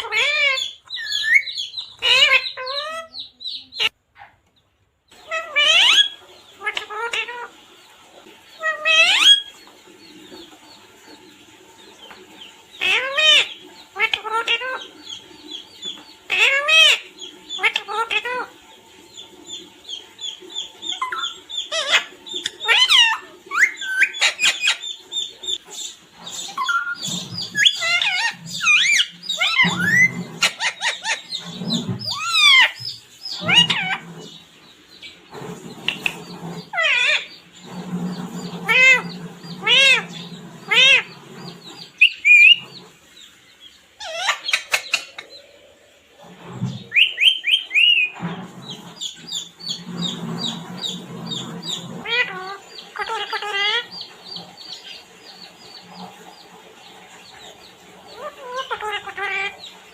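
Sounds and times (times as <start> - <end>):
parrot whistles and squawks: 0.0 - 3.2, 5.3 - 7.5, 20.9 - 24.8, 25.8 - 34.2, 35.8 - 42.8, 44.0 - 45.2, 46.9 - 53.9.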